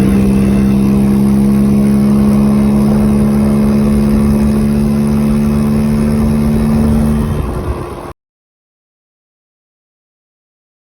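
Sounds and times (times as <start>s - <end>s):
scooter engine running: 0.0s - 8.1s.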